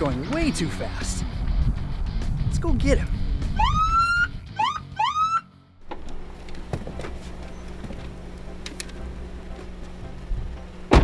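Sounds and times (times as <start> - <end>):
background music: 0.0 - 11.0
police siren whoops: 3.6 - 5.5.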